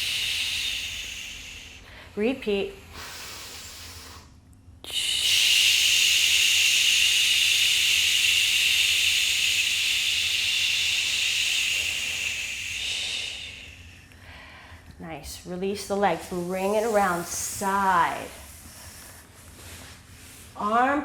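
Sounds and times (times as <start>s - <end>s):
breath hissing through mouth: 0.0s - 2.0s, 2.9s - 4.3s, 4.9s - 14.4s, 16.6s - 19.4s.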